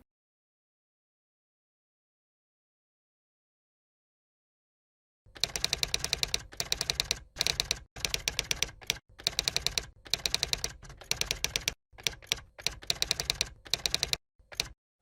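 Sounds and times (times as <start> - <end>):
keyboard typing clicks: 5.3 - 14.8.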